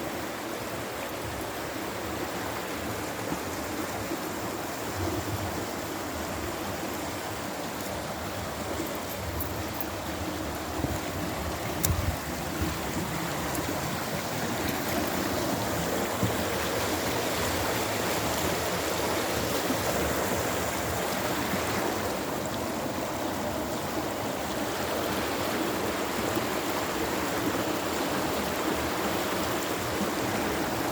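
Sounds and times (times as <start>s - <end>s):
river water rushing: 0.0s - 30.9s.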